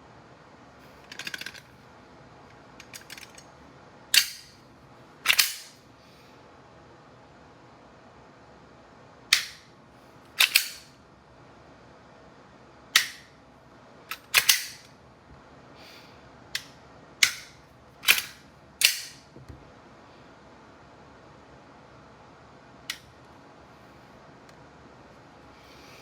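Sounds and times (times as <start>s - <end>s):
airsoft pistol snaps: 4.2s - 4.6s, 5.3s - 5.8s, 9.3s - 9.7s, 10.4s - 10.9s, 13.0s - 13.3s, 14.1s - 14.9s, 16.6s - 19.2s.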